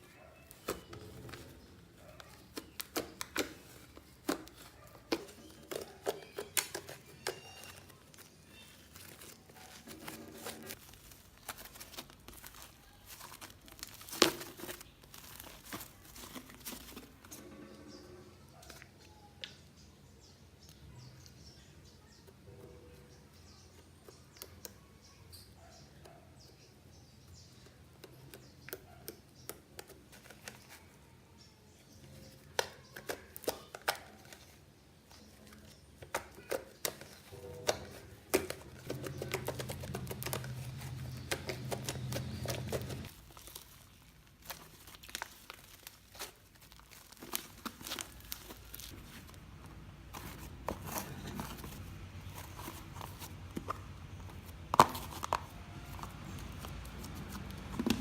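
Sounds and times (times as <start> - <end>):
slime crackling and popping: 38.3 - 49.1.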